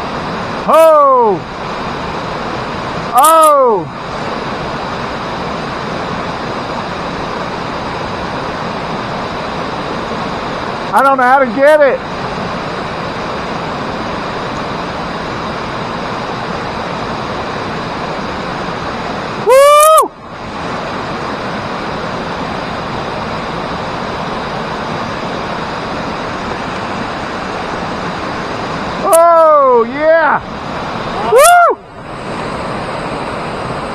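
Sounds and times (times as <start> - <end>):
creek water rushing: 0.0 - 33.9
man shouting: 0.7 - 1.4, 3.1 - 3.9, 19.5 - 20.1, 29.0 - 30.4, 31.1 - 31.8.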